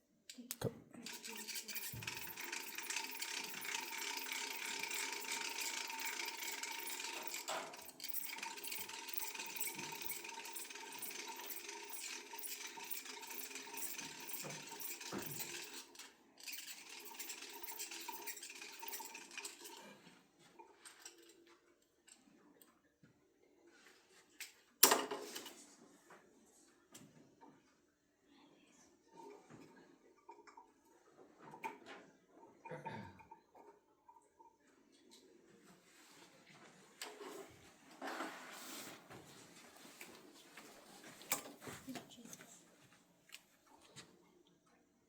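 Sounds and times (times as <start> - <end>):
model helicopter ticking whir: 1.1 - 15.7.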